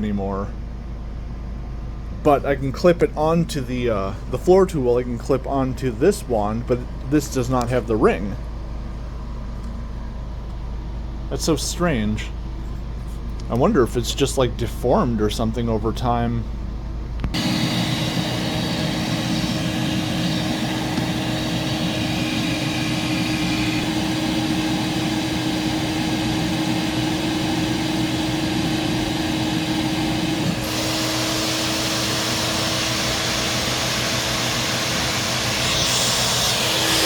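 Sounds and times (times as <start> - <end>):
vacuum cleaner running: 17.3 - 37.0.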